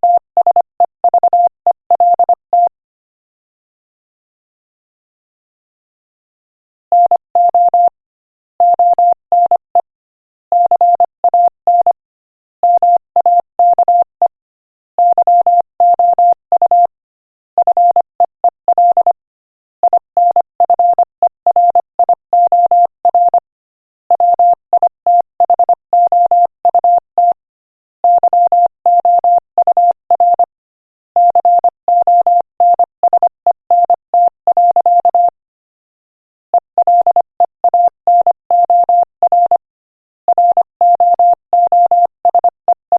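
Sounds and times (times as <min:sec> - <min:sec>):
morse code tone: 0:31.2 - 0:35.4, 0:36.6 - 0:39.7, 0:40.3 - 0:42.9.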